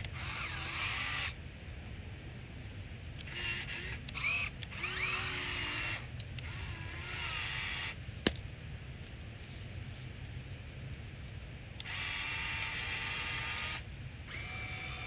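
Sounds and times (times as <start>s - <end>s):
small electric motors whining: 0.0s - 1.4s, 3.2s - 8.0s, 11.8s - 15.0s.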